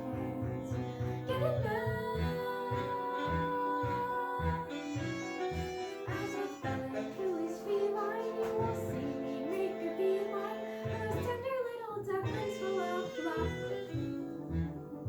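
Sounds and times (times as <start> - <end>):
instrumental backing with bass: 0.0 - 11.5, 12.1 - 15.0
young voice singing: 6.1 - 14.2.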